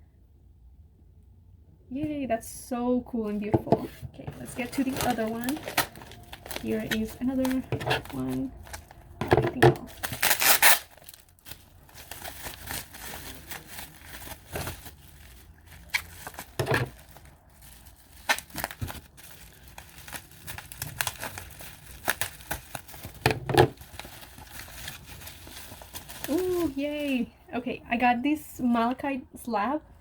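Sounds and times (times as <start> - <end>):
packaging crinkling and tearing: 4.3 - 27.3.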